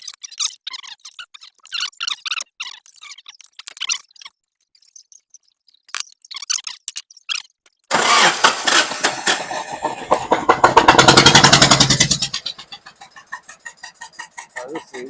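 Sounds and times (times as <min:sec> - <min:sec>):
scattered clicks and taps: 0:00.0 - 0:07.9
misfiring car engine: 0:07.9 - 0:15.0.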